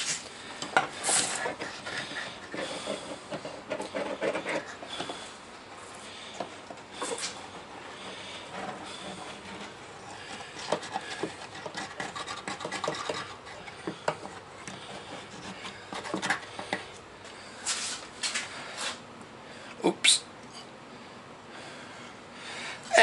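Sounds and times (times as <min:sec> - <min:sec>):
wood scraping and rubbing: 0:00.0 - 0:05.3, 0:06.4 - 0:17.0.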